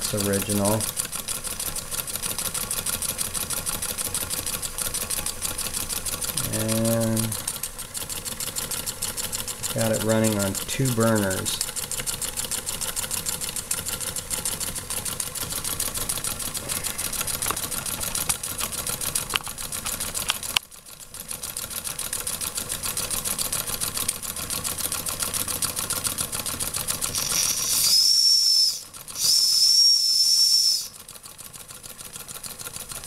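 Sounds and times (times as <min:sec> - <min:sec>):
toy steam engine beating: 0:04.4 - 0:17.7, 0:27.0 - 0:31.1
steam whistle: 0:27.1 - 0:31.0.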